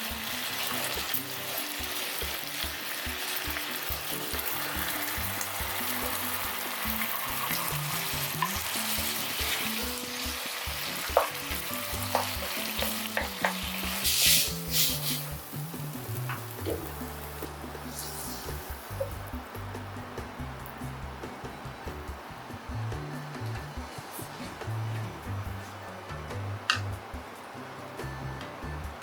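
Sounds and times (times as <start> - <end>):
food sizzling in a hot pan: 0.0 - 19.3
quiet background music: 0.0 - 29.0.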